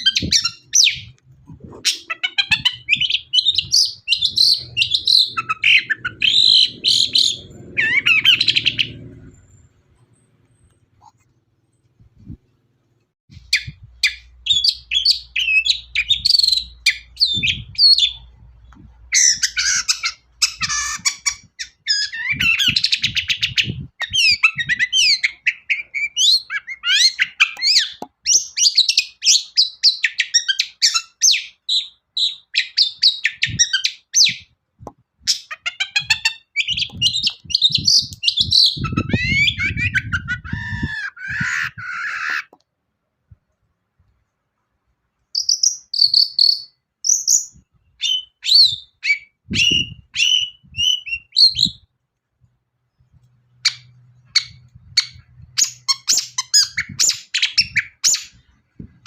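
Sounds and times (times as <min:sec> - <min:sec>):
bird singing chattering notes: 0:00.0 - 0:10.4.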